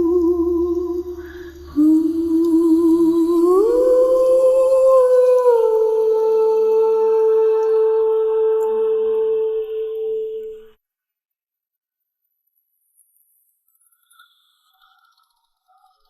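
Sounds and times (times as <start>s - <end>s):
hummed vocal melody: 0.0s - 10.7s.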